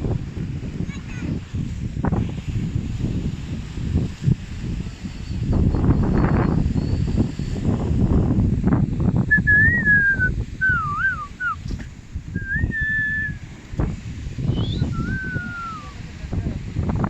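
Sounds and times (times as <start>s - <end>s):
wind buffeting microphone: 0.0s - 17.0s
person whistling: 9.3s - 11.6s, 12.4s - 13.4s, 14.5s - 16.0s.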